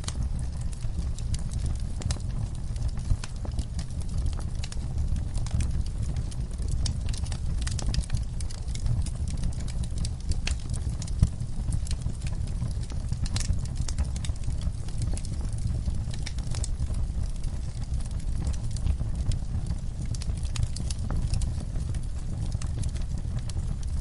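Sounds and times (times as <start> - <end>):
campfire crackling and popping: 0.0 - 24.0
low fire rumble: 0.0 - 24.0.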